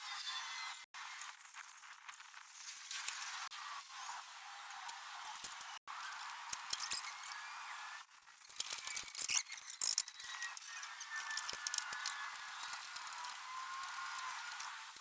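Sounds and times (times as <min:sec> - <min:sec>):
rapid clicks and metallic rattles: 0:04.8 - 0:07.4, 0:08.0 - 0:15.0.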